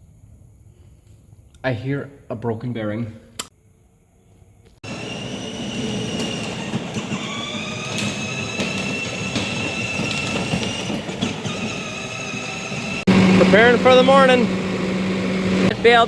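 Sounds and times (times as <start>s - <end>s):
machinery rattling clatter: 4.8s - 16.0s.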